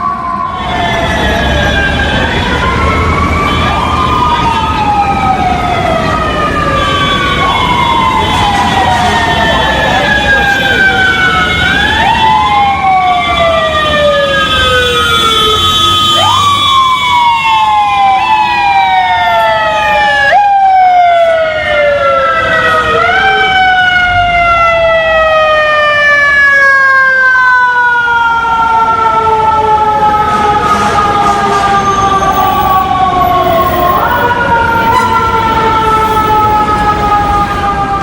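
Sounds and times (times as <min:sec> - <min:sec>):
fire truck sirens: 0:00.0 - 0:38.0.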